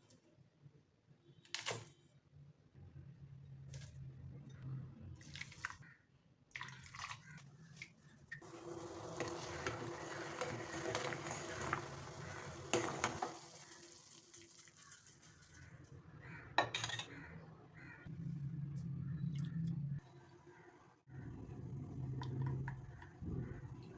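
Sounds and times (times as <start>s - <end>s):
pan sizzling: 8.4s - 15.6s.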